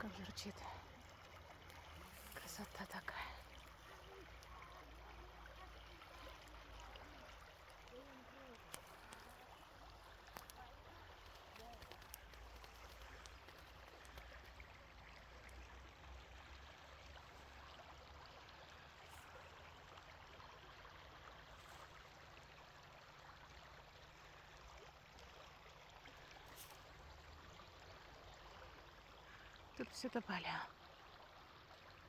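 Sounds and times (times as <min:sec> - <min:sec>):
small river babbling: 0:00.0 - 0:32.0.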